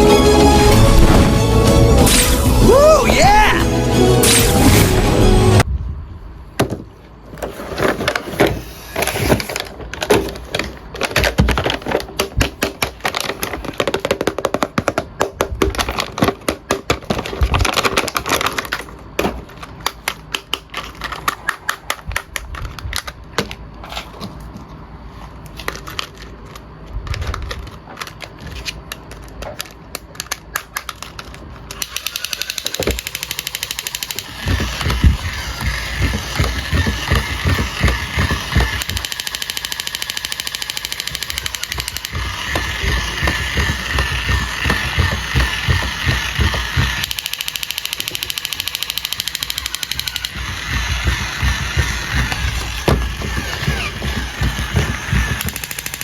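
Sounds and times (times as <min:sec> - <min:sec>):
plastic toy clicks and rattles: 0:08.9 - 0:23.6, 0:25.6 - 0:56.0.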